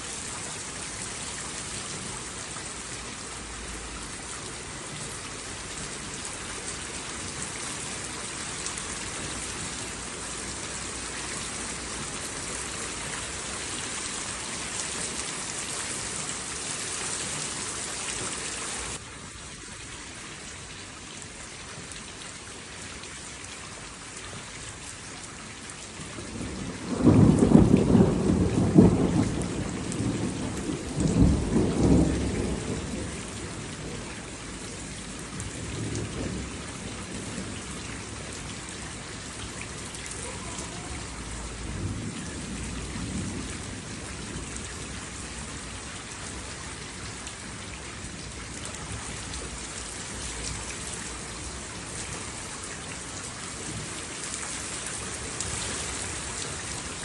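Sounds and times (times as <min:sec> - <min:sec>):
steady rain falling: 0:00.0 - 0:57.0
thunder rumbling: 0:26.2 - 0:39.4, 0:40.2 - 0:45.7.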